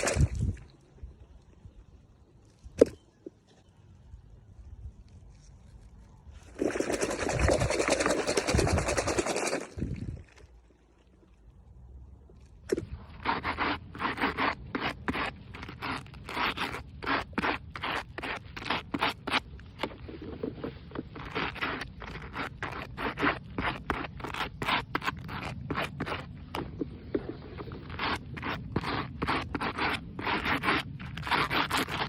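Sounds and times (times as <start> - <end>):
short scraping strokes: 0.0 - 0.6.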